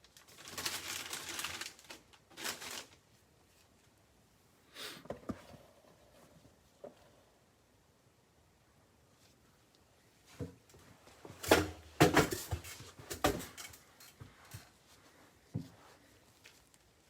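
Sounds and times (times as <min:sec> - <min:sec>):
handling knocks and clicks: 0:10.4 - 0:14.7.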